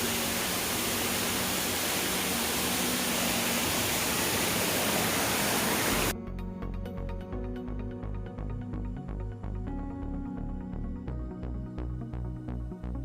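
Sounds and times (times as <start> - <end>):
waterfall rushing: 0.0 - 6.1.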